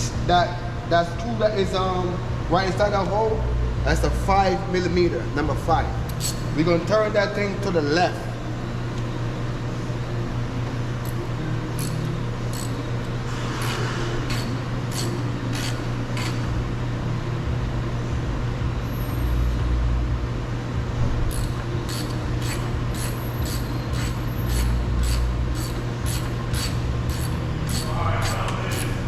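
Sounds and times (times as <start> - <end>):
steady low hum: 0.0 - 29.0
socket ratchet clicking: 6.1 - 6.4, 11.8 - 12.8, 13.6 - 16.4, 21.3 - 29.0.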